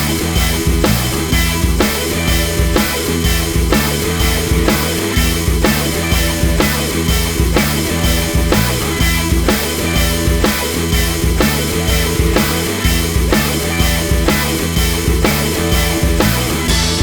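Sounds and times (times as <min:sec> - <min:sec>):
rock music with drums and guitar: 0:00.0 - 0:17.0.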